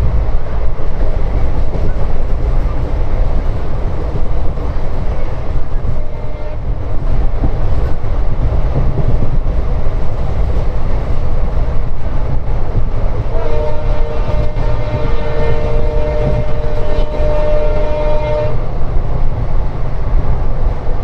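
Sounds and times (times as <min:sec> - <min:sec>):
train rumbling on track: 0:00.0 - 0:21.0
locomotive horn chord: 0:06.0 - 0:06.6, 0:13.3 - 0:18.6.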